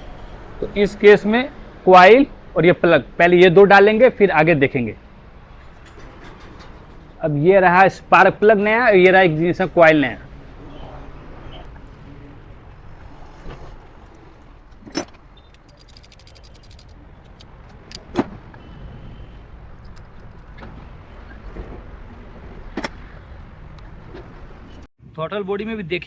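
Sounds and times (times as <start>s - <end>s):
sharp metallic clicks: 15.0s - 18.2s
ratchet ticking: 15.5s - 17.4s.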